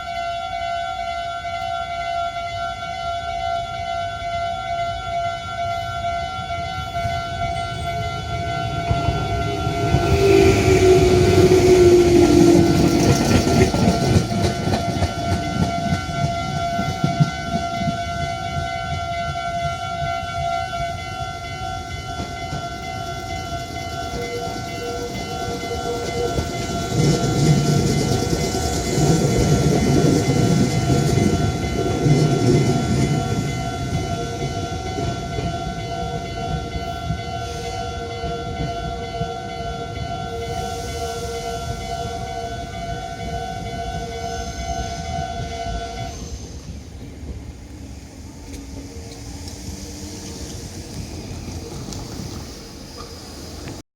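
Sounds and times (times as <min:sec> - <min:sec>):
crossing warning bells ringing: 0:00.0 - 0:53.8
train wheels clattering over rails: 0:08.8 - 0:37.5, 0:46.4 - 0:53.8.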